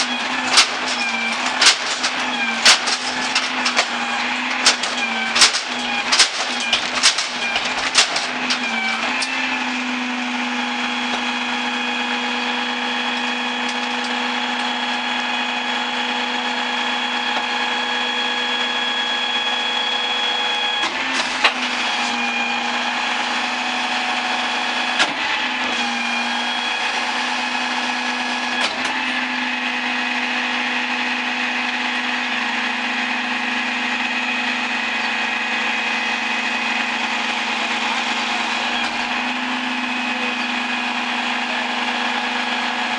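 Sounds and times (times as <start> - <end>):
metallic clanks: 0.0 - 9.2
garbage truck engine running: 0.0 - 42.9
hydraulic whine: 0.0 - 42.9.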